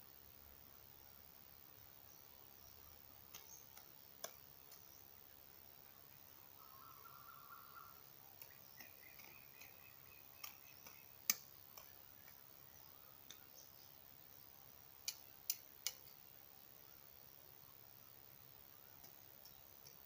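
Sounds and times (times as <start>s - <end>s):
faint thin chirping: 6.6s - 14.5s.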